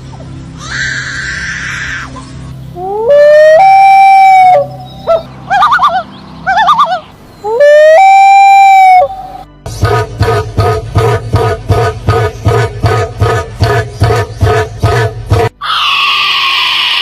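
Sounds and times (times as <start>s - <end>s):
bird warbling trill: 2.8s - 9.4s
bird calling: 2.8s - 17.0s.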